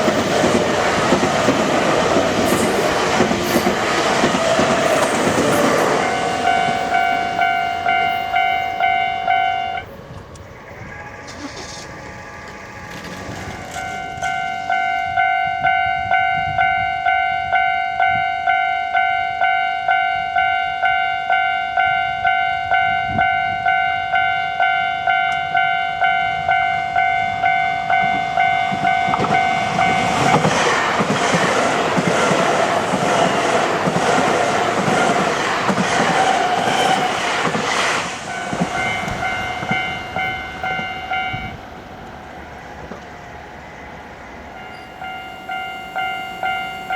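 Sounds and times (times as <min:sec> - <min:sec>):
train wheels clacking on rails: 0:00.0 - 0:09.0, 0:22.4 - 0:41.6
level-crossing bell ringing: 0:05.9 - 0:09.9, 0:13.7 - 0:30.5, 0:38.3 - 0:41.6, 0:44.5 - 0:46.9.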